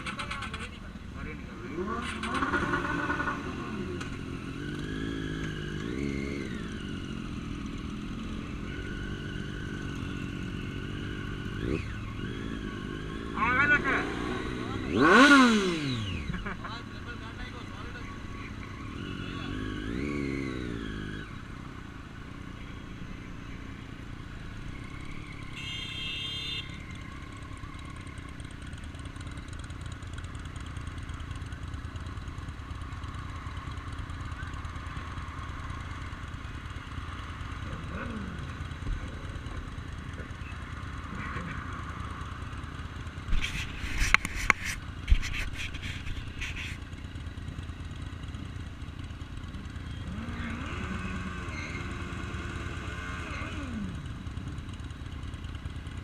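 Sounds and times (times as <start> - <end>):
low road rumble: 0.0 - 56.0
engine passing by: 8.0 - 16.5, 18.8 - 21.4.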